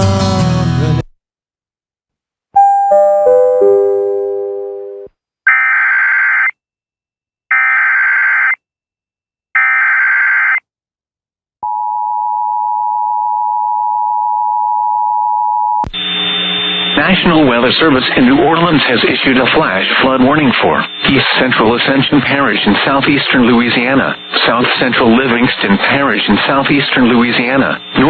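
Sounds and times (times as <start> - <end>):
steady attention tone: 2.6 - 5.1, 15.8 - 28.0
screeching digital data bursts: 16.0 - 28.0.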